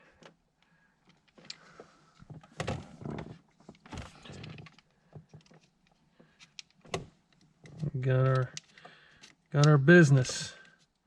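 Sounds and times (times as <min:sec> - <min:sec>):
small plastic clicks: 0:03.7 - 0:09.8.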